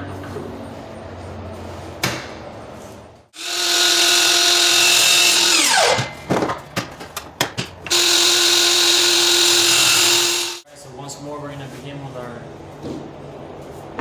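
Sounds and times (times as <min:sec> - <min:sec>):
miter saw running: 0:03.4 - 0:06.0, 0:07.9 - 0:10.6.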